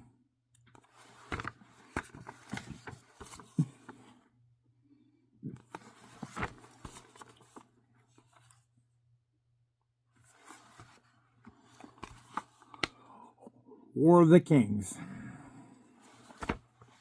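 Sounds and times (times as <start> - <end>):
comic books rustling and crinkling: 0.6 - 4.2, 5.5 - 8.7, 10.1 - 13.0, 15.8 - 17.0.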